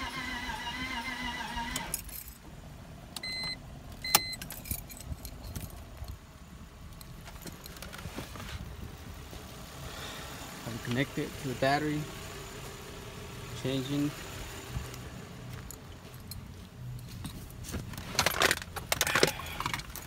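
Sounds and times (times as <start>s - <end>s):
car engine cranking without starting: 0.0s - 20.0s
keys jangling: 1.9s - 2.4s, 4.3s - 6.2s
short electronic beeps: 3.2s - 4.4s.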